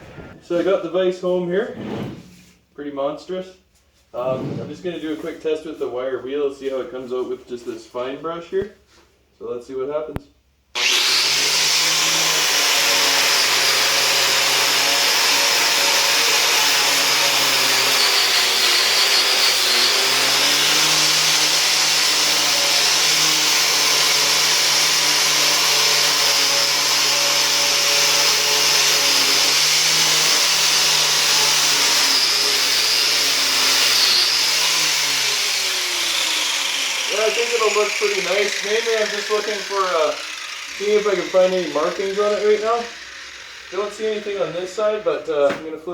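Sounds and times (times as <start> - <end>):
power tool motor whine: 10.8 - 44.2.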